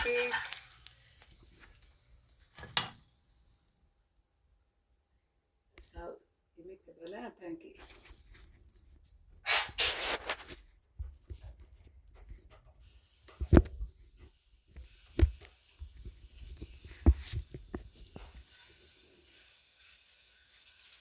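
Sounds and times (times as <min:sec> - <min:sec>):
batter sizzling in a pan: 0:00.0 - 0:03.9, 0:12.8 - 0:21.0.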